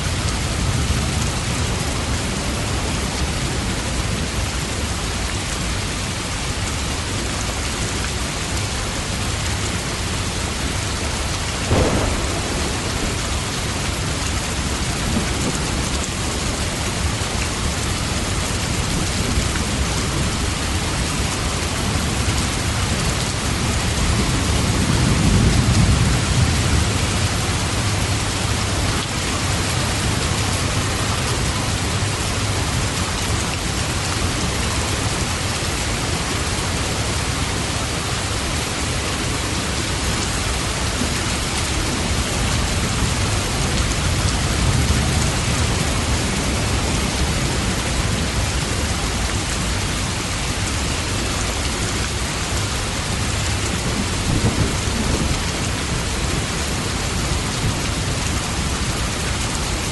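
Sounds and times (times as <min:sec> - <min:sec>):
heavy rain: 0:00.0 - 0:59.9
distant thunder rumbling: 0:11.5 - 0:18.3.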